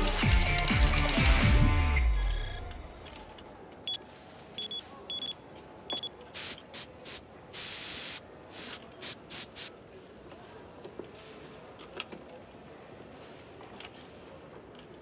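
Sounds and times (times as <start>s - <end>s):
short hissing spurts: 6.4s - 9.7s.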